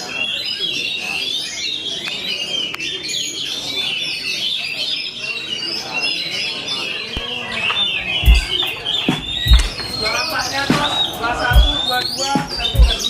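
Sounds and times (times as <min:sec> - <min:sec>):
birds singing in chorus: 0:00.0 - 0:13.0
heavy low thump: 0:08.1 - 0:10.0.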